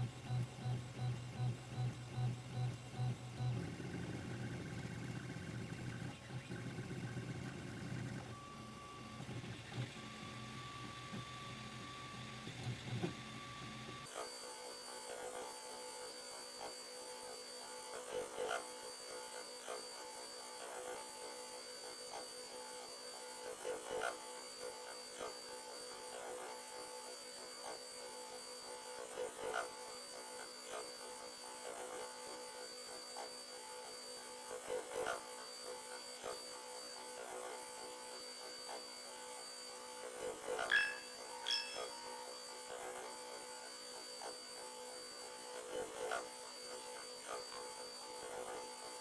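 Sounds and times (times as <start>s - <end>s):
high tone: 40.7s - 42.0s.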